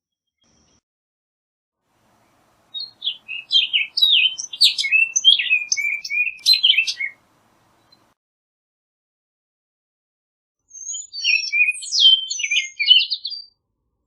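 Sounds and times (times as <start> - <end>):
oriole singing whistled notes: 2.1 - 8.1, 10.7 - 13.6.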